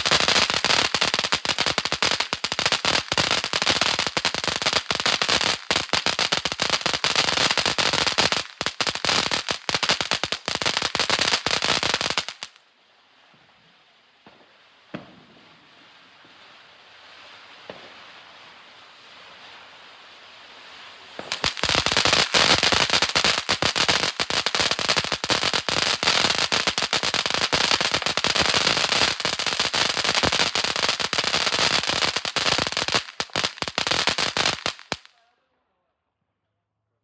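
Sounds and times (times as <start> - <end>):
firework crackling pops: 0.0 - 12.6, 14.2 - 35.2
firework fountain hissing: 0.0 - 12.6, 15.3 - 35.1.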